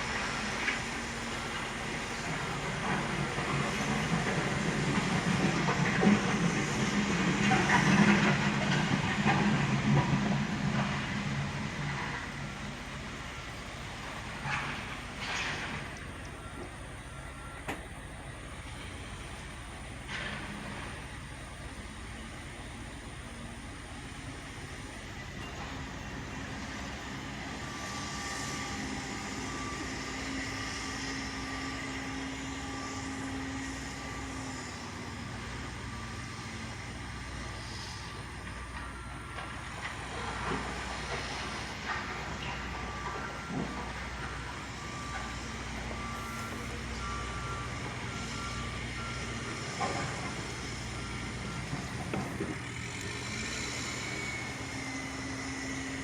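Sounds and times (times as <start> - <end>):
higher-pitched reversing alarm: 0.0 - 21.8, 24.0 - 56.0
backhoe engine running: 0.0 - 56.0
reversing alarm beeping: 0.0 - 56.0.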